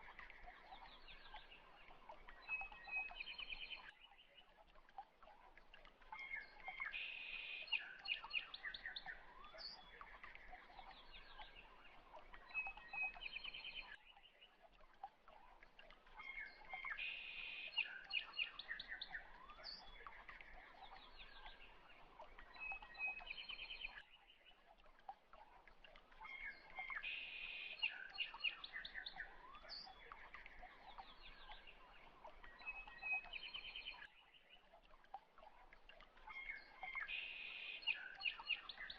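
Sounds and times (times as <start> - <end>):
birds chirping and trilling: 26.2 - 34.8.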